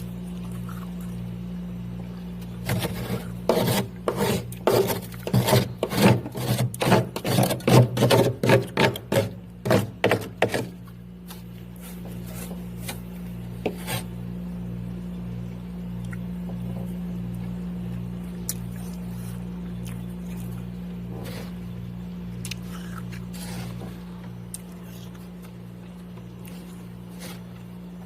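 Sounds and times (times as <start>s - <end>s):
ice scraping: 2.6s - 10.7s.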